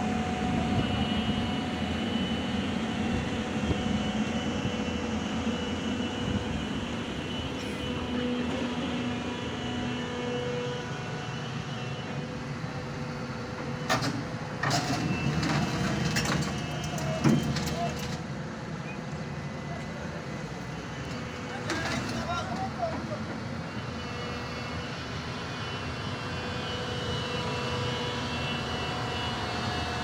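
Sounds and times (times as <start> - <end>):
diesel engine running: 0.0 - 18.7.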